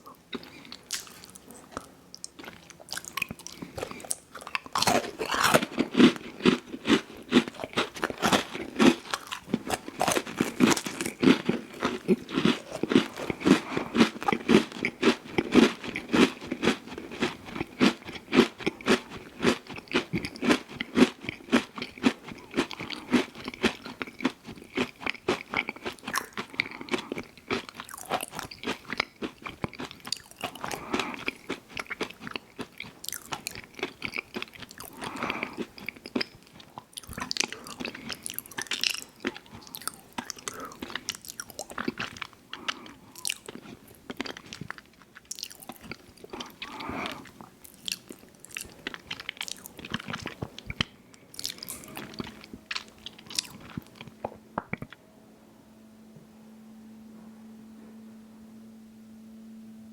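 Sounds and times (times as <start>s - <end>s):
chewing: 0.0s - 55.0s
crunching and biting: 0.3s - 55.0s.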